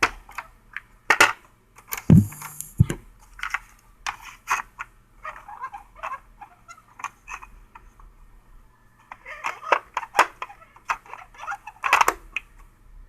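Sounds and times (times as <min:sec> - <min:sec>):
heavy thump: 0:02.1 - 0:02.9.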